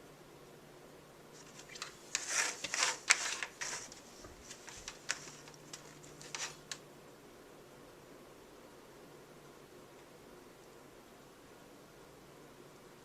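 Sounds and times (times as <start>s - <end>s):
rustling: 1.3s - 6.8s.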